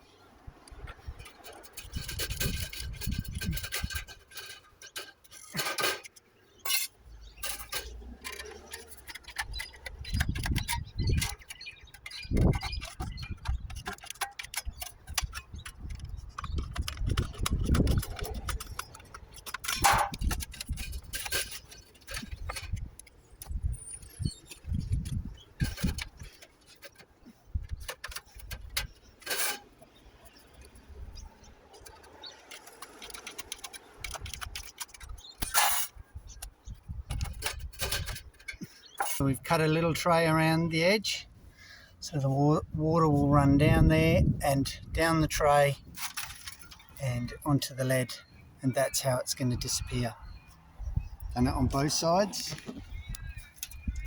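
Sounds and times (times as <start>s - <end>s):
metal being snipped and clinking: 1.2s - 22.9s.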